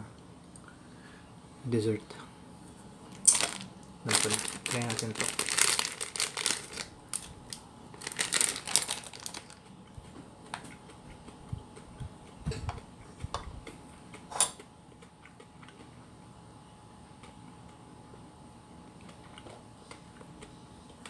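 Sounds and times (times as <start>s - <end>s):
handling and eating clicks: 3.1s - 9.7s
plastic candy wrapper crinkling: 3.1s - 9.7s.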